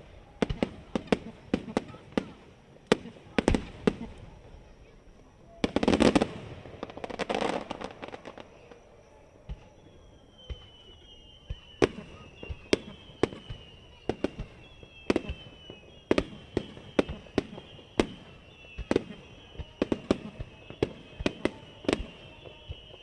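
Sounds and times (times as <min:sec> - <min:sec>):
whistling firework shells: 0:00.0 - 0:23.0
firework shells bursting: 0:05.6 - 0:15.5.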